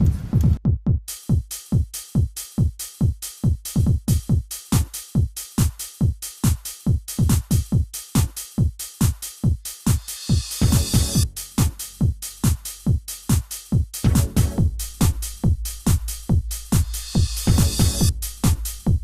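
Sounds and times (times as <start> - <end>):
fast kick drum: 0.0 - 19.0
electronic dance music: 1.2 - 19.0
hiss: 9.2 - 12.8.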